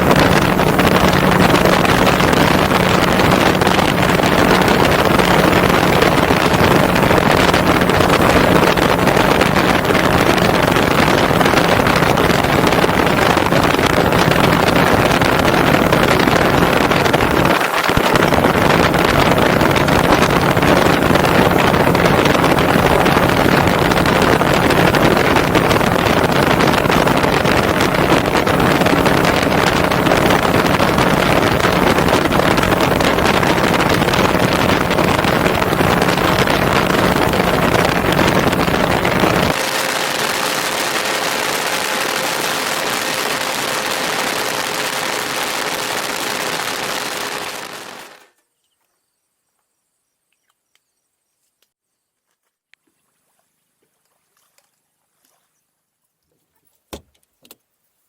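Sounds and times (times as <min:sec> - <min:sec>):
wind buffeting microphone: 0:00.0 - 0:48.2
boat motor running: 0:00.0 - 0:48.3.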